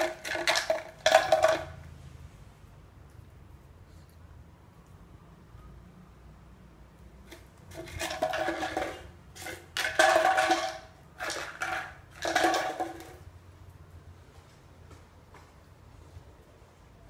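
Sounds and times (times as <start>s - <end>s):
kibble rattling in plastic bottle: 0.0s - 1.8s, 7.3s - 13.3s.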